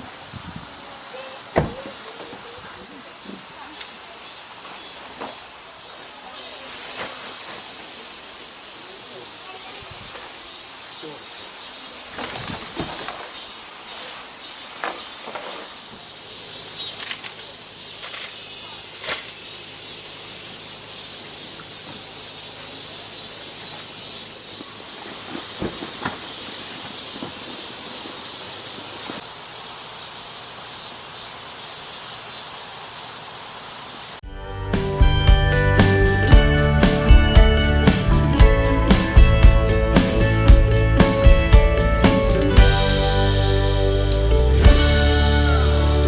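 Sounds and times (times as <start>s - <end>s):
insects chirping: 0.0s - 34.3s
very high buzz: 16.8s - 21.0s.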